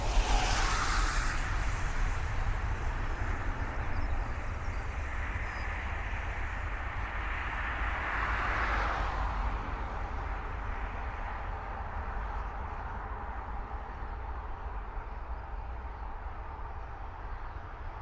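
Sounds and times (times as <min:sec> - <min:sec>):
jet engines rushing: 0:00.0 - 0:03.8.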